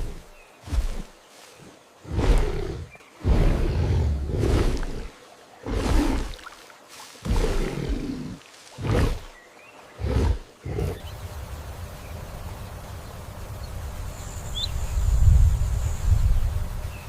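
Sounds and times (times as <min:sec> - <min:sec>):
big cat roaring grunts: 0:02.0 - 0:06.4, 0:07.2 - 0:09.3, 0:10.0 - 0:11.1
steady low rumble: 0:10.8 - 0:17.0.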